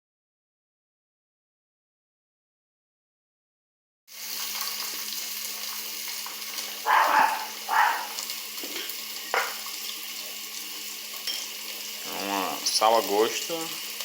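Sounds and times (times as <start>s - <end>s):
food sizzling in a pan: 4.1s - 14.0s.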